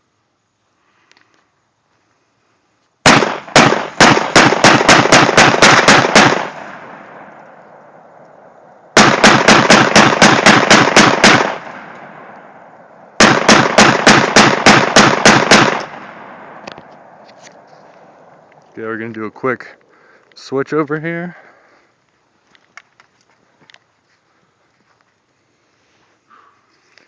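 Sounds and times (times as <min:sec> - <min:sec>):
rifle firing rapid shots: 0:03.0 - 0:07.3, 0:09.0 - 0:12.4, 0:13.2 - 0:16.6
gunshot echo: 0:03.1 - 0:07.8, 0:09.0 - 0:17.2.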